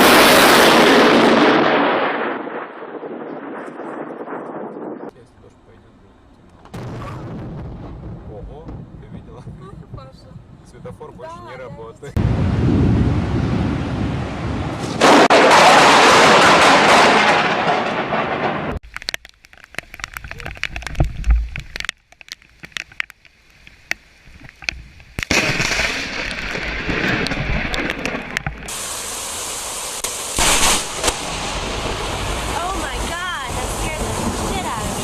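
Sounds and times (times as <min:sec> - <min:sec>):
loud thunder crack: 0:00.0 - 0:05.1, 0:06.7 - 0:18.8, 0:25.3 - 0:28.8, 0:30.3 - 0:35.0
storm noise: 0:00.0 - 0:05.2, 0:06.7 - 0:18.8, 0:25.2 - 0:35.0.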